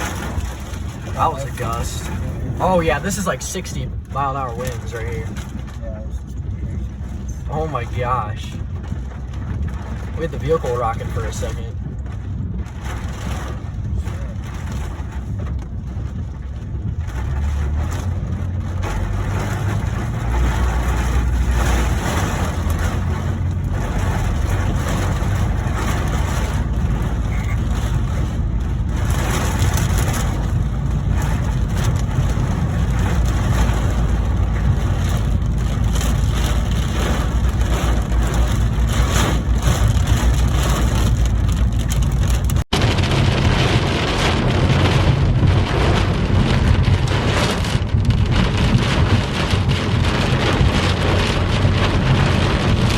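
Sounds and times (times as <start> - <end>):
rain pounding on a vehicle: 0.0 - 52.9
wind gusts buffeting: 0.0 - 52.9.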